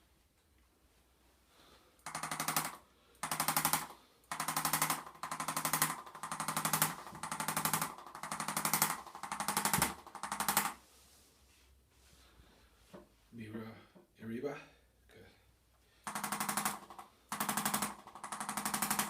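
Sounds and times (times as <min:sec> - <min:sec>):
percussion massager buzzing: 0:02.0 - 0:10.7.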